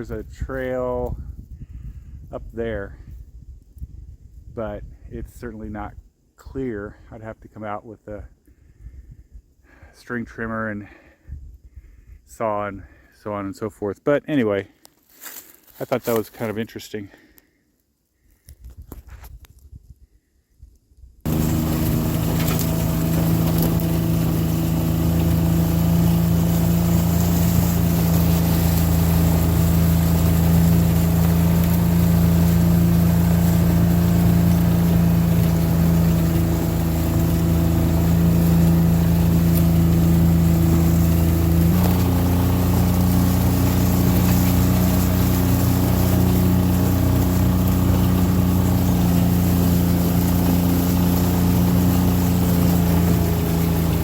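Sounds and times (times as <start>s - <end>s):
engine running steadily: 21.3s - 54.0s.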